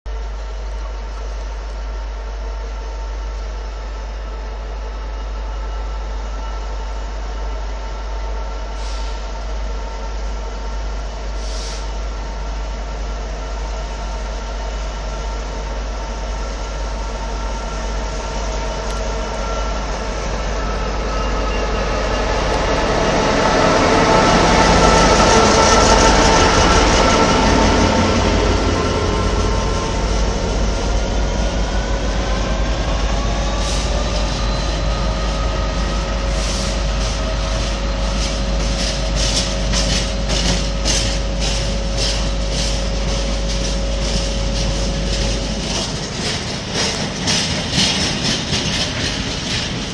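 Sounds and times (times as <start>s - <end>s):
diesel locomotive engine running: 0.1s - 49.9s
rising whine: 12.0s - 49.9s.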